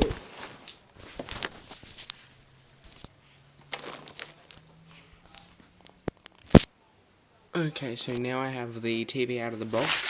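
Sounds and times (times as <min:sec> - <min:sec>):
packaging rustling: 0:00.0 - 0:06.7, 0:09.6 - 0:10.0.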